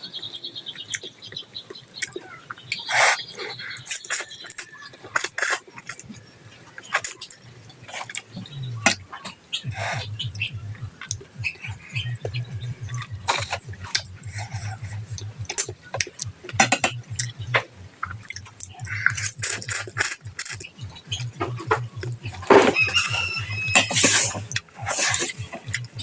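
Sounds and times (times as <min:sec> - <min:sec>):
chewing and mouth noises: 0:00.1 - 0:26.0
low steady hum: 0:06.0 - 0:26.0.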